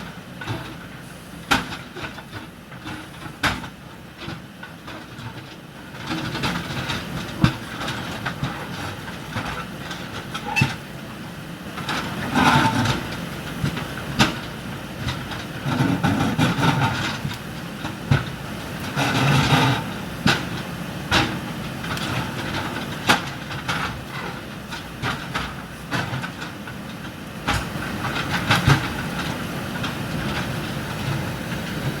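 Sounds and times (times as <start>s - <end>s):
backhoe engine running: 0.0s - 32.0s
clanking of metal and rubble: 11.8s - 32.0s.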